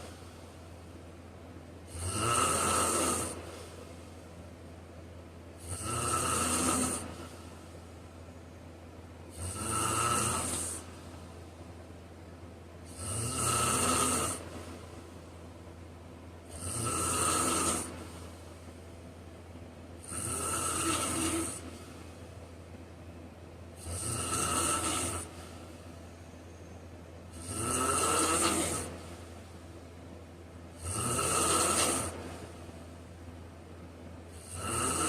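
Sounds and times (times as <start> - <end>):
person snoring: 1.9 - 3.7, 5.6 - 7.4, 9.3 - 10.9, 12.9 - 14.6, 16.5 - 18.0, 20.0 - 21.8, 23.8 - 25.4, 27.3 - 29.0, 30.8 - 32.4, 34.3 - 35.0.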